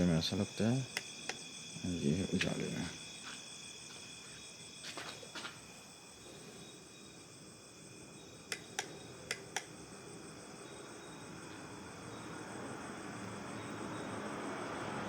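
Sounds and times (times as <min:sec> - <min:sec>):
crickets chirping: 0:00.0 - 0:15.0
sharp clicks: 0:08.5 - 0:09.8.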